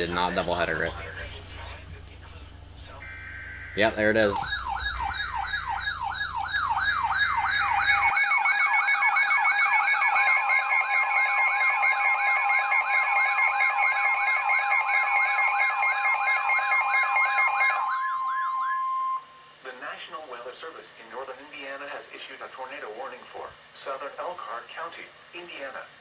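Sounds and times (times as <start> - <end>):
steady warning alarm tone: 0.0 - 19.6
warbling alert tone: 2.8 - 11.5, 17.8 - 19.4
siren-like electronic yelp: 2.8 - 19.6.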